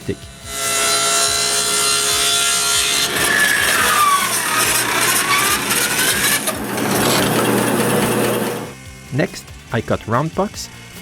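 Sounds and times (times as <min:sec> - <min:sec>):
power saw cutting wood: 0:00.0 - 0:08.8.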